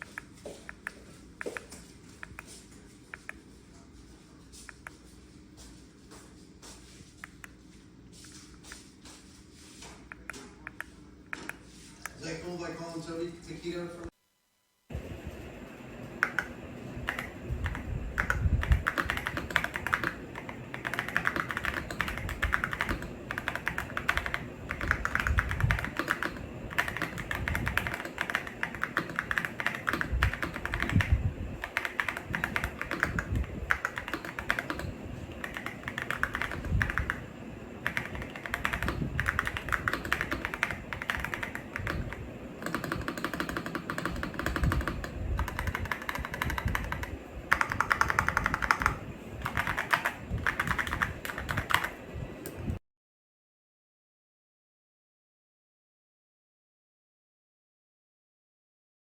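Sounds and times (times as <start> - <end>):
fast typing on mechanical keyboard: 16.2 - 52.0.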